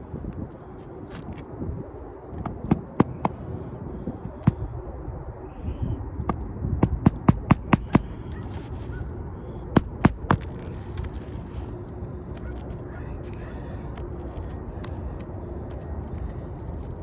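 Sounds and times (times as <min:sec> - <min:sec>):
hammer knocking nails: 0:06.8 - 0:08.2, 0:09.8 - 0:10.6.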